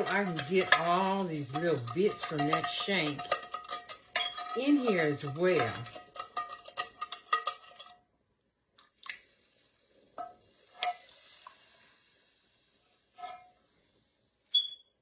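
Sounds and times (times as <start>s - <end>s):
utensil clinking metal pan: 0.0s - 8.0s
faint hiss of deglazing: 9.1s - 14.8s.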